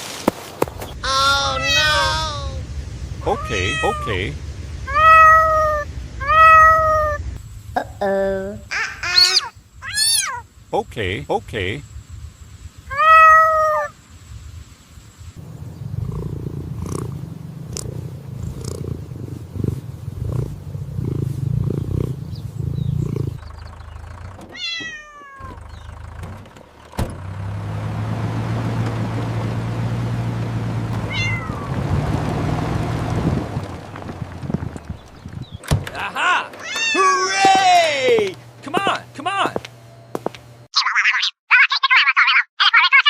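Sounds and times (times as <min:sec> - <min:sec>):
low mechanical hum with hiss: 0:00.9 - 0:23.4, 0:35.7 - 0:40.7
cartoon animal squeal: 0:01.0 - 0:02.6, 0:03.3 - 0:04.2, 0:08.7 - 0:10.4, 0:12.9 - 0:13.9, 0:40.8 - 0:43.0
pulsing low rumble: 0:01.0 - 0:08.7, 0:15.2 - 0:24.4, 0:29.1 - 0:35.7.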